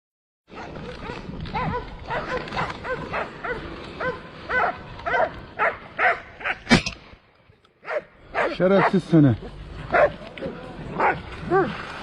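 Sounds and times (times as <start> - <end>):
dog barking and yelping: 0.6 - 6.6, 7.8 - 9.0, 9.9 - 10.2, 11.0 - 11.7.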